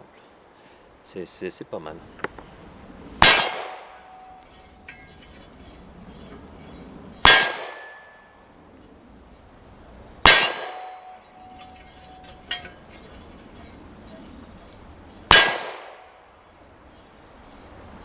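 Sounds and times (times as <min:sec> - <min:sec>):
pistol shots: 0:03.2 - 0:04.1, 0:07.2 - 0:08.1, 0:10.2 - 0:11.1, 0:15.3 - 0:16.1.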